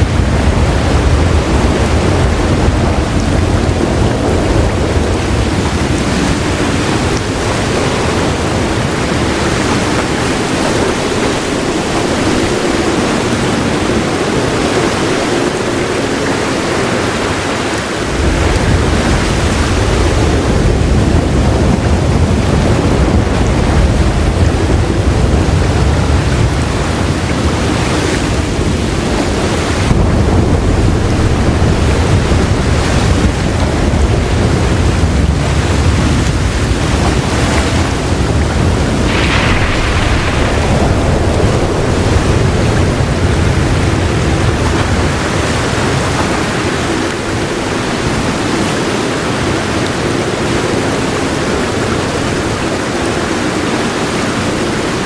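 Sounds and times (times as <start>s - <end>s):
rumble of thunder: 0.0s - 17.2s, 18.0s - 48.5s
heavy rain hissing: 37.8s - 48.5s.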